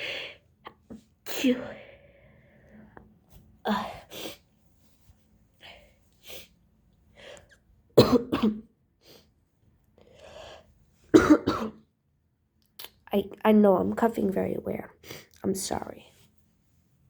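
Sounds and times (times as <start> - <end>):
quiet breaths: 0.0 - 7.7
woman coughing: 8.0 - 8.7, 11.1 - 11.8.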